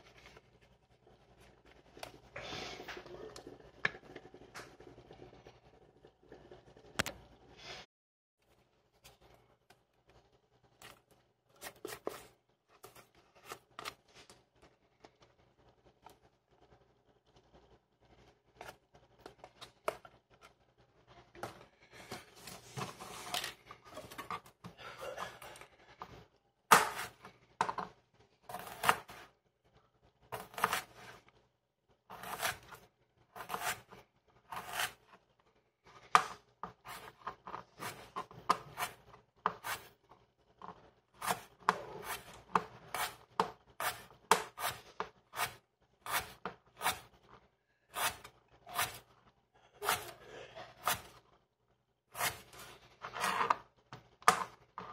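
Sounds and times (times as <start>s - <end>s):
knife cutting and scraping ingredients: 8.5s - 15.3s, 18.5s - 20.7s, 21.3s - 29.4s, 30.2s - 31.4s, 32.1s - 35.2s, 35.8s - 51.3s, 52.1s - 54.9s.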